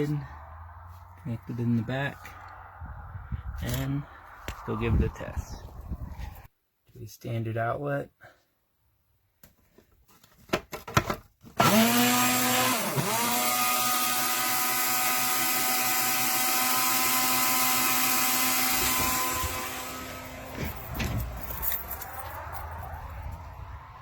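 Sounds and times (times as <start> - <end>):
appliance motor whining: 11.6 - 21.0.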